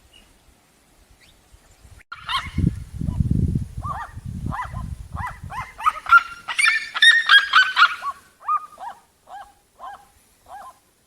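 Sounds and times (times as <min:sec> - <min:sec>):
birds calling: 0:02.2 - 0:03.2, 0:03.8 - 0:10.8.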